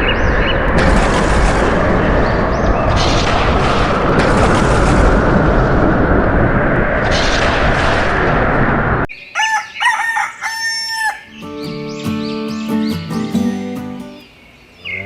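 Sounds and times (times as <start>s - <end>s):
loud steady rushing noise: 0.0s - 9.1s
rooster crowing: 9.3s - 11.4s
steady pitched notes: 11.4s - 14.2s.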